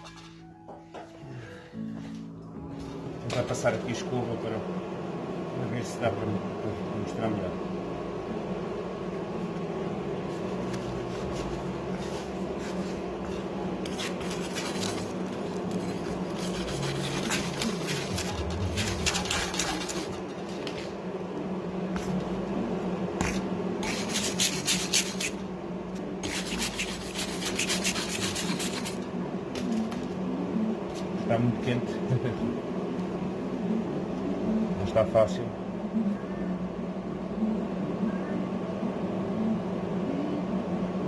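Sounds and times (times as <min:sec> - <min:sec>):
wire brush scrubbing metal: 0:00.0 - 0:00.4, 0:12.0 - 0:20.9, 0:23.2 - 0:25.4, 0:26.2 - 0:29.0
low hum: 0:00.0 - 0:41.0.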